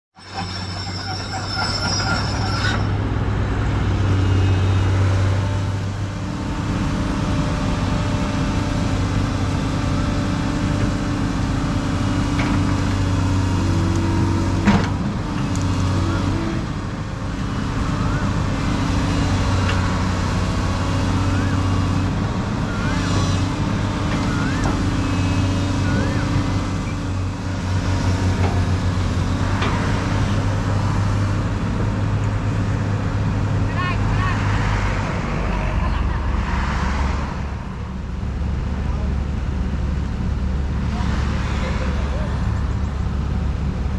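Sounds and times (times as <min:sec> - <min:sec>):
heavy diesel engines running: 0:00.1 - 0:43.9
high-pitched squeaks: 0:00.2 - 0:03.2.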